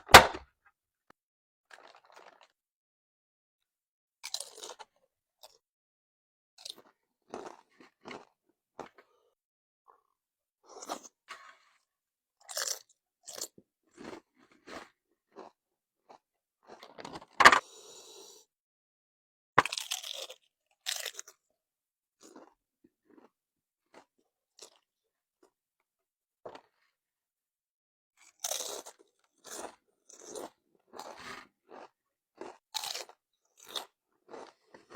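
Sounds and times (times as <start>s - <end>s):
chewing crunchy chips: 1.7s - 2.6s, 4.2s - 5.6s, 6.6s - 9.3s, 9.9s - 11.8s, 12.4s - 17.4s, 19.6s - 21.5s, 22.2s - 25.6s, 26.5s - 26.9s, 28.2s - 34.9s
loud crunching bite: 19.6s - 20.3s
crunching chips: 19.6s - 21.2s.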